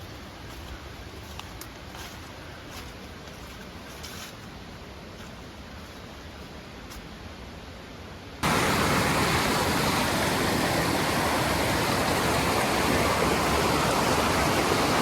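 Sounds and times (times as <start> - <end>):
fast-flowing stream rushing: 8.4 - 15.0.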